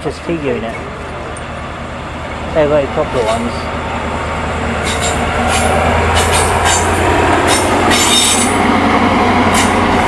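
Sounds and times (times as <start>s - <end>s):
high-pitched wheel squeals: 7.5s - 8.6s.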